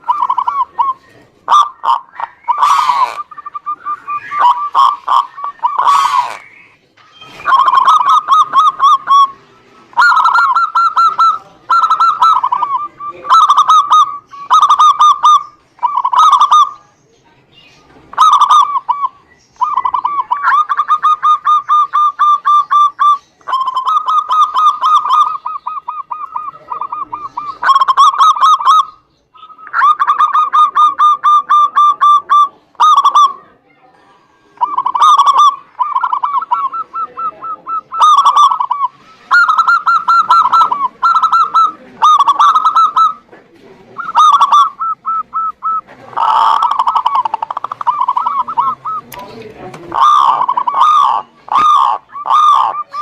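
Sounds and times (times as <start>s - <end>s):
doves cooing: 0.0s - 17.0s, 17.8s - 53.0s.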